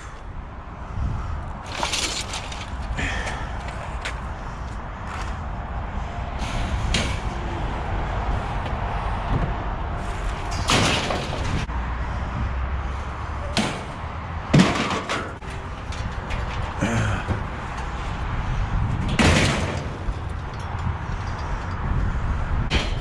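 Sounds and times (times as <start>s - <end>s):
steady low rumble: 0.0s - 14.5s, 15.4s - 23.0s
loud bangs and slams: 6.4s - 7.4s, 10.4s - 11.7s, 13.5s - 17.9s, 18.5s - 21.2s.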